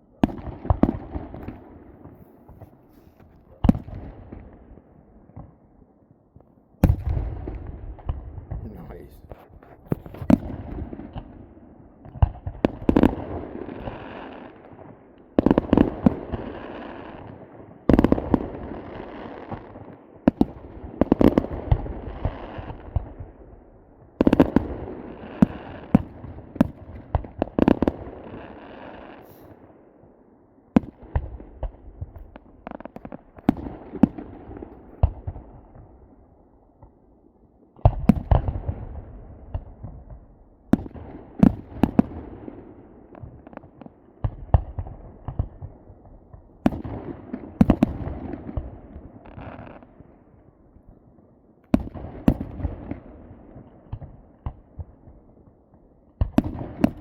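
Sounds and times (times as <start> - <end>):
fireworks bangs and crackles: 0.0 - 5.8, 6.4 - 29.8, 30.7 - 37.0, 37.7 - 57.0
fireworks echo rumbling: 0.0 - 37.1, 37.8 - 57.0
scattered firework pops: 0.2 - 4.6, 6.8 - 8.7, 9.3 - 11.4, 12.0 - 14.0, 24.2 - 24.8, 30.8 - 36.0, 37.8 - 42.3, 43.1 - 49.9, 51.6 - 53.0, 56.2 - 57.0.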